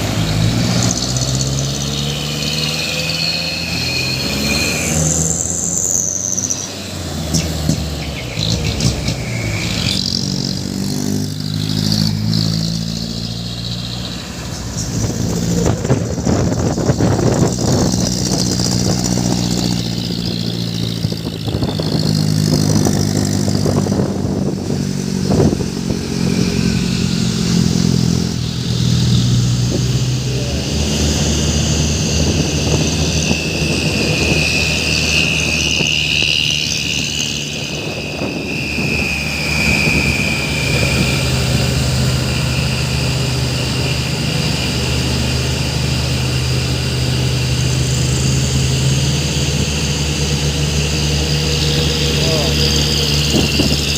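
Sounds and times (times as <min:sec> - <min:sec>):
truck engine revving: 0:00.0 - 0:53.9
high steady whine: 0:23.6 - 0:53.9.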